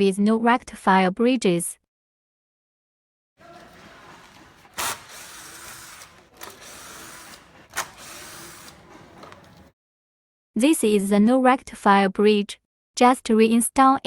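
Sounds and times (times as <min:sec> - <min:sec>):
small motor running: 0:03.4 - 0:09.7.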